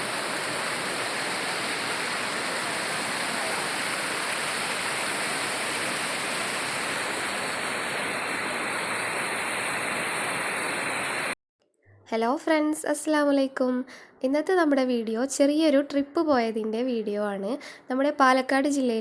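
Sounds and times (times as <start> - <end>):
waterfall rushing: 0.0 - 11.4.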